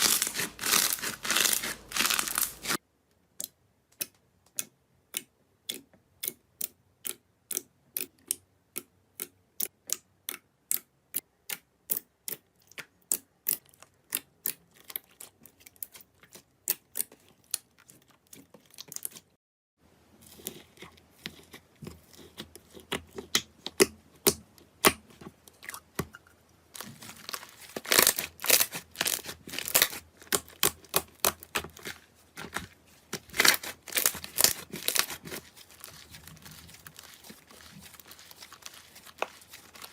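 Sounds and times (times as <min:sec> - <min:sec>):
slime crackling and crunching: 0:00.0 - 0:02.8, 0:26.8 - 0:39.9.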